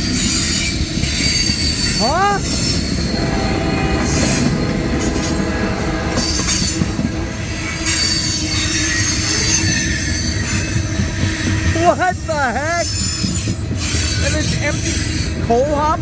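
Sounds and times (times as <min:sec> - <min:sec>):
train wheels rumbling on rails: 0:00.0 - 0:16.0
high steady squeal: 0:00.2 - 0:10.8.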